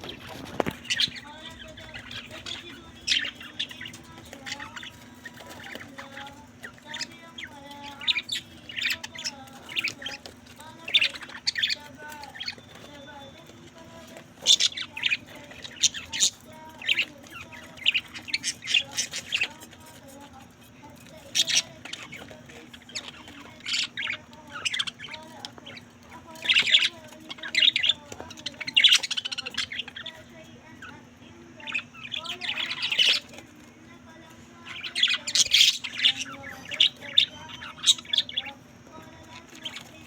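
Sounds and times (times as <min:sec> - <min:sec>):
budgerigars chirping and squawking: 0:00.0 - 0:40.0
soft warbling chatter: 0:00.0 - 0:40.0
steady low hum: 0:00.0 - 0:40.0.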